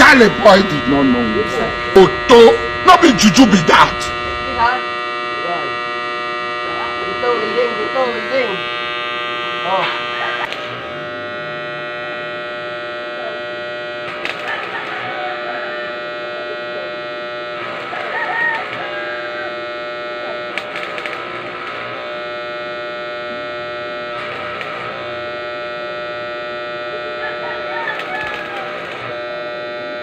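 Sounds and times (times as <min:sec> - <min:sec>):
noisy crackling bursts: 0:00.0 - 0:09.6, 0:13.7 - 0:15.0, 0:20.5 - 0:23.0, 0:23.9 - 0:26.3, 0:27.8 - 0:29.1
welding machine electric buzz: 0:00.0 - 0:30.0.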